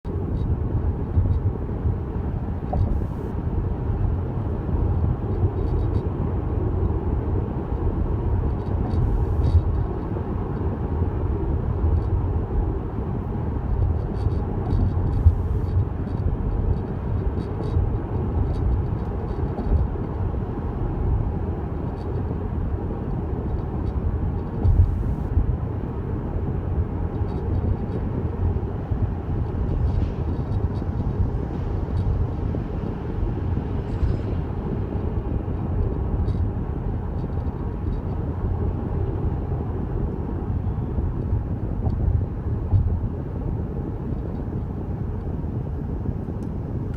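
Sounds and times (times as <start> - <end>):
car road rumble: 0.1 - 46.9
faint ticks and creaks: 5.3 - 6.1, 8.4 - 10.7, 13.6 - 17.8, 18.4 - 20.2, 21.8 - 25.3, 27.1 - 28.1, 29.4 - 34.6, 35.8 - 38.2.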